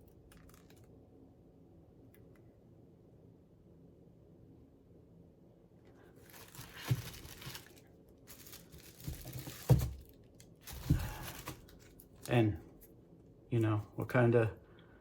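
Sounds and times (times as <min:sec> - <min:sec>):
plastic crinkling: 0:00.0 - 0:00.9, 0:06.1 - 0:12.4.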